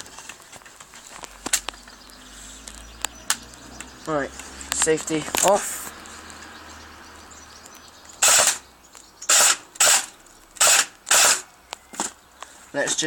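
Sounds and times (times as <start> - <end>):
airsoft gun firing bursts: 8.2 - 8.6, 9.3 - 11.4.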